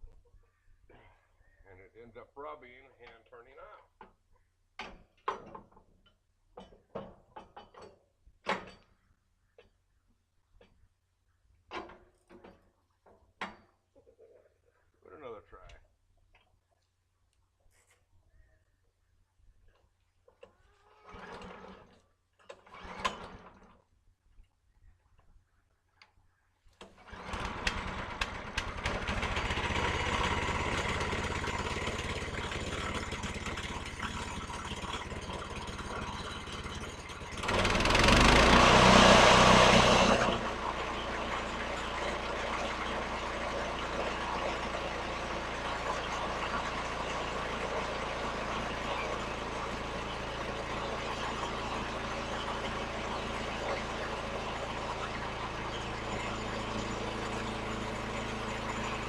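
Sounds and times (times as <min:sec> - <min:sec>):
pull-start gasoline engine running: 0:20.9 - 0:23.8, 0:26.8 - 0:59.0.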